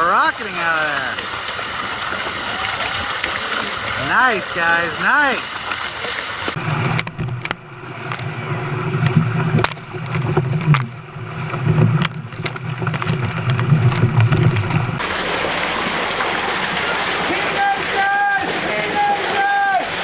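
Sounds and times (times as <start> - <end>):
sharp splashes: 0.0 - 20.0
water rushing and splashing: 0.0 - 20.0.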